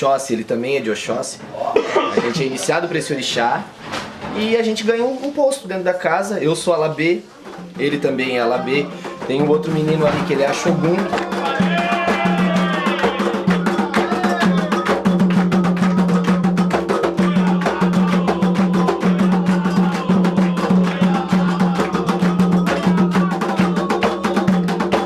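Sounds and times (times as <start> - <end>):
hand drums fast rhythm: 7.5 - 25.0
people singing a chant: 10.7 - 15.2, 17.0 - 25.0.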